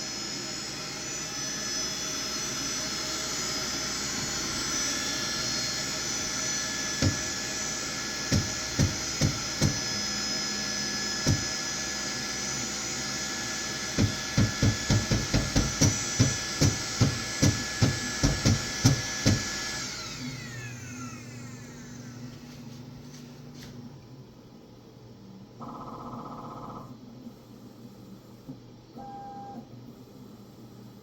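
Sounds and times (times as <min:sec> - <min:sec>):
fans whirring: 0:00.0 - 0:25.6
nozzle knocking on printer bed: 0:07.0 - 0:07.3, 0:08.3 - 0:09.8, 0:11.2 - 0:11.5, 0:14.0 - 0:19.6.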